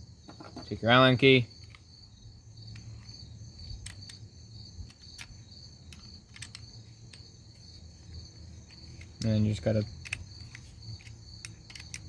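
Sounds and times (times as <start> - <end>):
crickets trilling: 0.0 - 12.0
small sharp clicks: 3.7 - 4.2, 4.8 - 7.3, 8.8 - 12.0.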